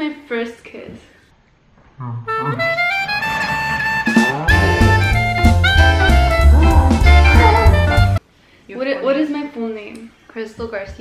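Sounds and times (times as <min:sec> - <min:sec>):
brass horns playing jazz: 0:02.3 - 0:08.2
heavy bass line: 0:02.5 - 0:08.2
drums: 0:02.6 - 0:08.2.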